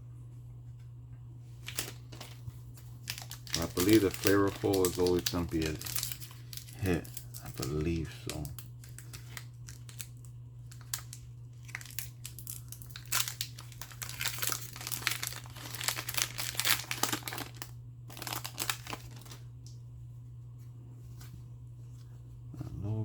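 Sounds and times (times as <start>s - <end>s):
plastic wrapper crinkling and tearing: 1.6s - 19.7s.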